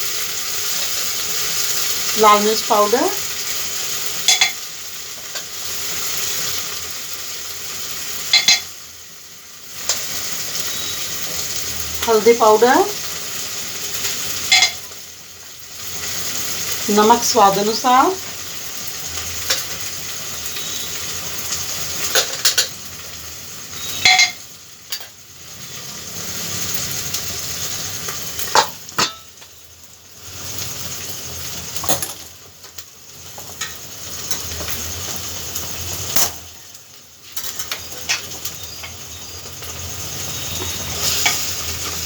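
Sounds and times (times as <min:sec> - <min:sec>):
masala sizzling in hot oil: 0:00.0 - 0:42.0
spoon clinking against metal pot: 0:04.2 - 0:04.7, 0:08.3 - 0:08.8, 0:14.5 - 0:15.0, 0:23.8 - 0:25.1, 0:28.4 - 0:29.3.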